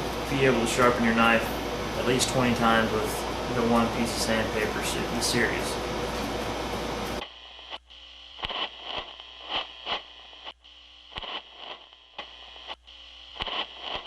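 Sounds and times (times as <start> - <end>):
static hiss: 0.0 - 14.0
soft crackle: 7.0 - 14.0
sharp clicks and pops: 8.4 - 14.0.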